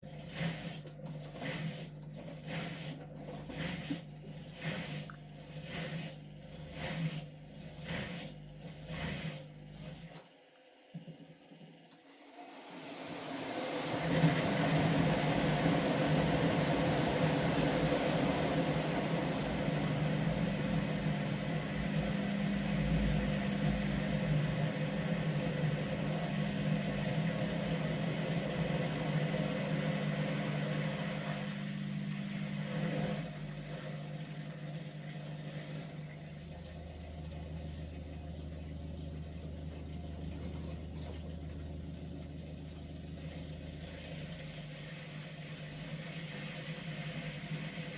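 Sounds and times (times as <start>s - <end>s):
washing machine motor hum: 0.0s - 47.9s.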